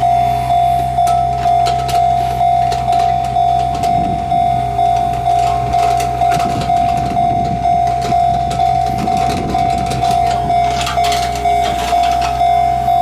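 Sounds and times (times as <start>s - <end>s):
level crossing warning bell: 0.0s - 13.0s
rumbling noise: 1.0s - 13.0s
clatter: 4.8s - 12.6s.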